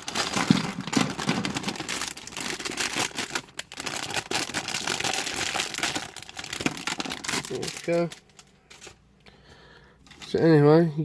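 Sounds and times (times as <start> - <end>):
plastic pieces clicking and rattling: 0.0 - 8.1
plastic bag crinkling: 0.0 - 9.0.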